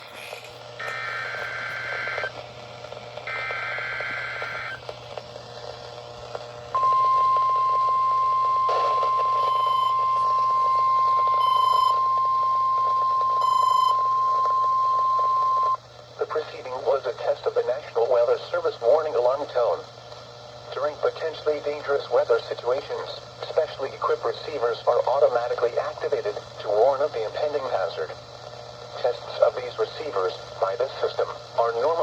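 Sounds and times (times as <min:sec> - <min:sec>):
steady warning alarm tone: 0:00.0 - 0:02.4, 0:03.2 - 0:04.8, 0:06.7 - 0:15.8
static hiss: 0:00.0 - 0:11.4.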